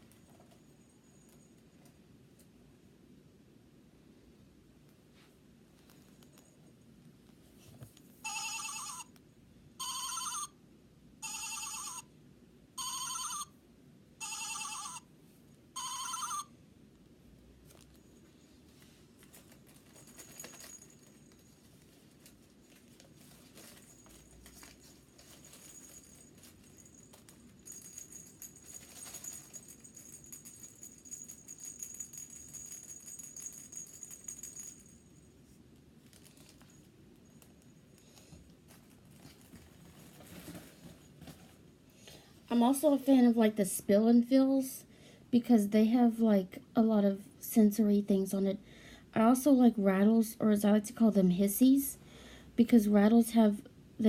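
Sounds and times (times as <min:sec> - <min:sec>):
toy rustling and crinkling: 0:17.6 - 0:41.7.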